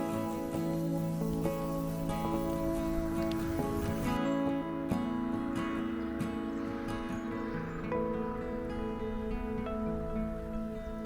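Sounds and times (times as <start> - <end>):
plucked acoustic guitar: 0.0 - 11.0.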